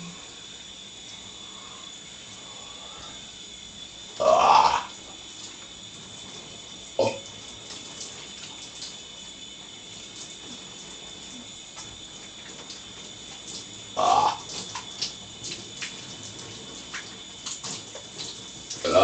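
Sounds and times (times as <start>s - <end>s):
shower water running: 0.0s - 19.0s
person burping: 4.2s - 4.9s, 7.0s - 7.2s, 14.0s - 14.4s.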